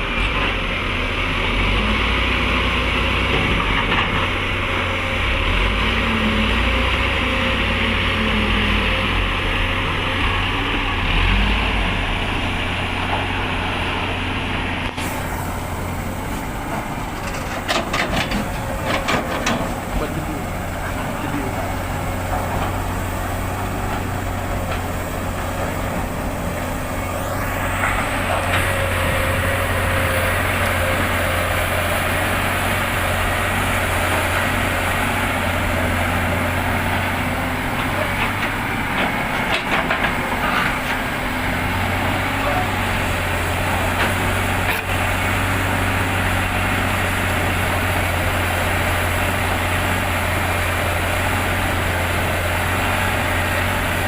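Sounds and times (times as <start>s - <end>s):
heavy diesel engines running: 0.0s - 54.0s
knocks and clatter: 16.7s - 20.2s
rising whine: 25.2s - 36.4s.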